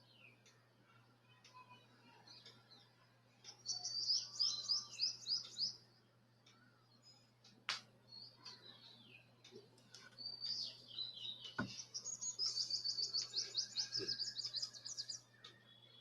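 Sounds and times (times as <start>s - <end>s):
bird chirping: 0.0s - 7.3s, 8.1s - 16.0s
faint knocks: 11.5s - 11.9s.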